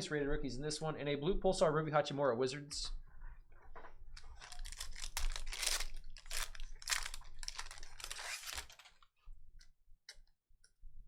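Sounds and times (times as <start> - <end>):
card pack wrapper tearing and crinkling: 4.2 - 9.0.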